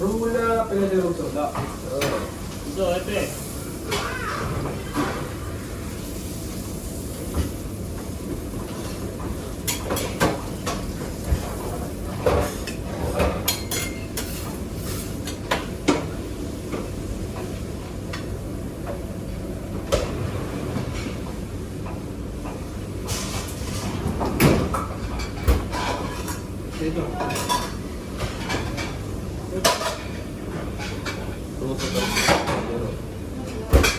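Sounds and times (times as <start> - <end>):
kitchen background noise: 0.0 - 33.9.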